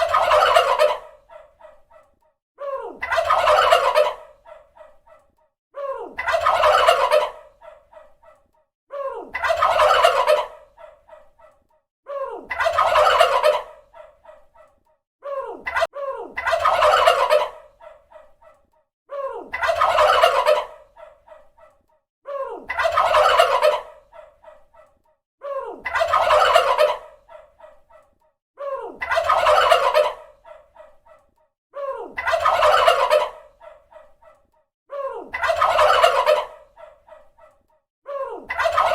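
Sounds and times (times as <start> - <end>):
turkey gobbling: 0.0 - 1.8, 3.0 - 4.6, 6.2 - 7.8, 9.4 - 11.0, 12.5 - 14.4, 15.7 - 18.3, 19.6 - 21.4, 22.7 - 24.4, 25.9 - 27.5, 29.0 - 30.8, 32.2 - 34.1, 35.3 - 37.2, 38.5 - 38.9.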